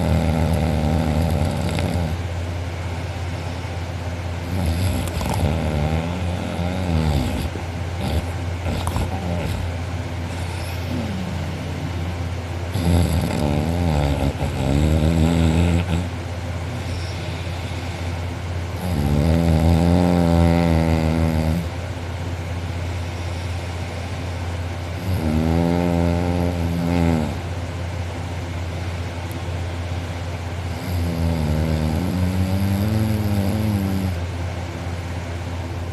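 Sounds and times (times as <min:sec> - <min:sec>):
man snoring loudly: 0:00.0 - 0:02.2, 0:04.4 - 0:09.7, 0:10.3 - 0:11.9, 0:12.7 - 0:16.1, 0:18.8 - 0:21.7, 0:25.0 - 0:27.4, 0:30.8 - 0:34.2
steady low hum: 0:00.0 - 0:35.9.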